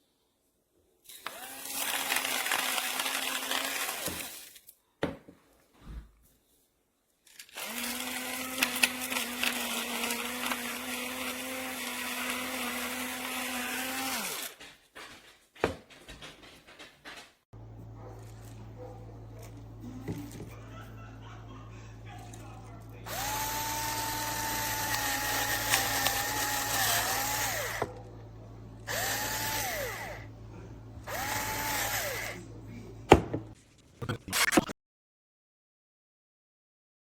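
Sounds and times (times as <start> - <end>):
electric grinder motor grinding: 1.2 - 4.4, 7.5 - 14.6, 23.0 - 27.9, 28.9 - 30.3, 31.0 - 32.4.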